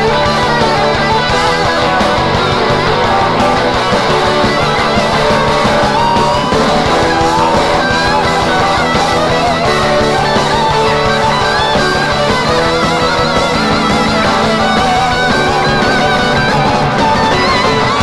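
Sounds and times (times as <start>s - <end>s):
electric guitar lead bending notes: 0.0s - 18.0s
live rock band playing: 0.0s - 18.0s.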